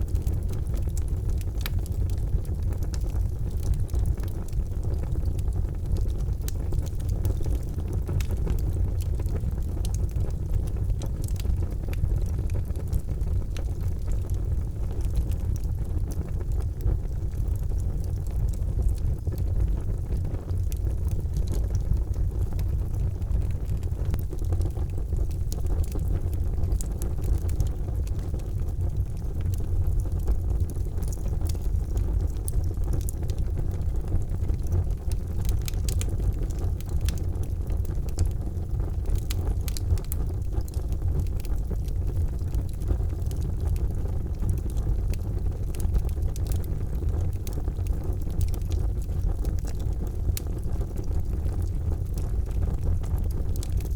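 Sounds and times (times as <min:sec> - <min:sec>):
charcoal fire crackling: 0:00.0 - 0:53.9.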